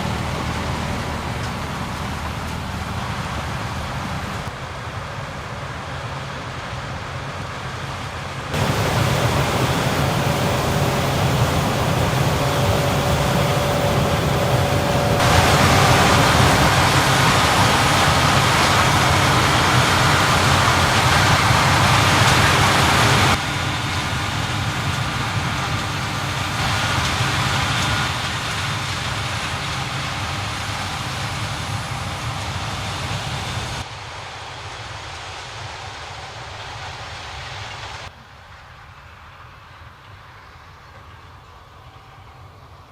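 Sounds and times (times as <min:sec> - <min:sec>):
harvest machinery running: 0:00.0 - 0:04.4, 0:08.6 - 0:33.8.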